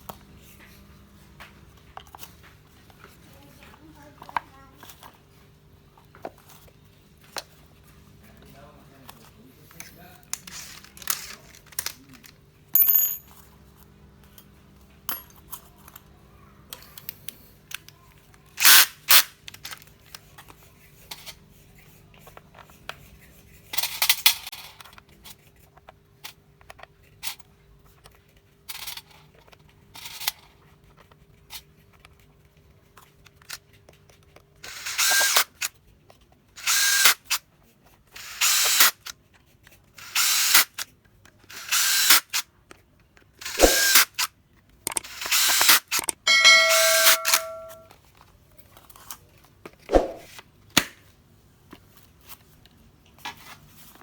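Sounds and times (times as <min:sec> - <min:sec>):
impact wrench bursts: 0:43.4 - 0:44.2, 0:44.9 - 0:47.8.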